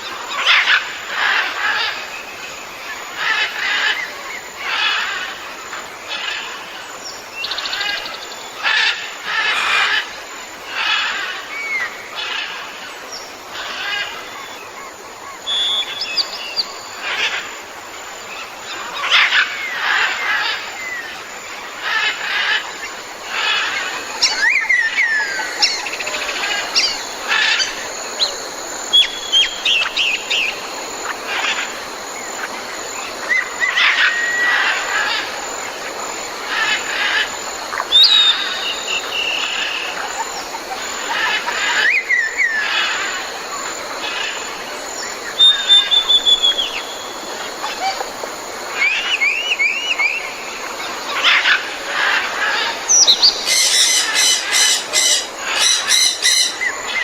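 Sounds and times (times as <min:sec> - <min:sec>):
insects buzzing: 0:00.0 - 0:57.0
birds chirping and calling: 0:13.5 - 0:17.5, 0:18.6 - 0:57.0.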